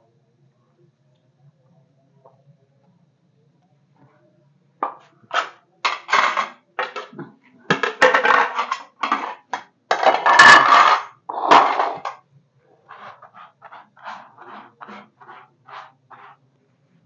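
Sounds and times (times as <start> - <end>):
pots and pans clattering: 4.8 - 12.2.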